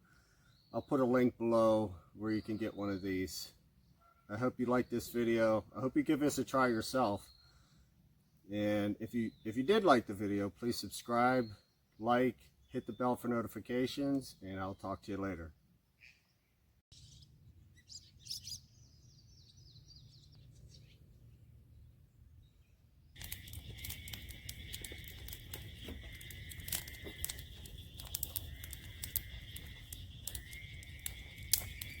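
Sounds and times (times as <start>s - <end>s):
birds chirping: 0.3s - 32.0s
sharp clicks and crackles: 23.2s - 32.0s.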